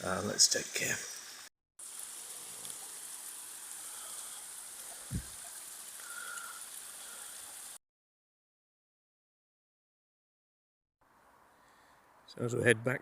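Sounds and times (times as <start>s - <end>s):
waterfall splashing: 1.8s - 7.8s
short low thump: 5.1s - 5.3s.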